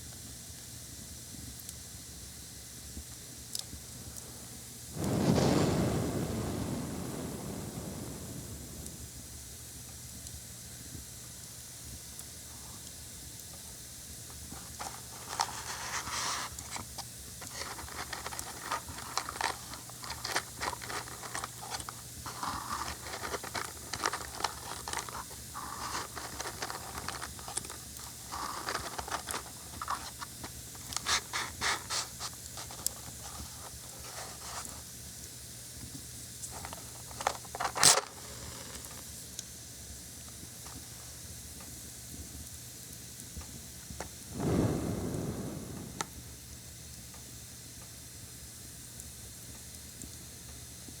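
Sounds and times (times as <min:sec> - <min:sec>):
fire crackling: 0:04.9 - 0:11.0, 0:14.1 - 0:47.3
loud sharp crack: 0:05.0 - 0:09.5, 0:44.3 - 0:46.6.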